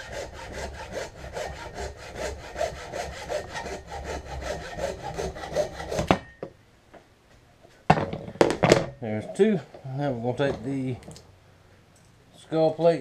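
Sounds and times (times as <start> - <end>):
handsaw cutting antler: 0.0 - 6.2.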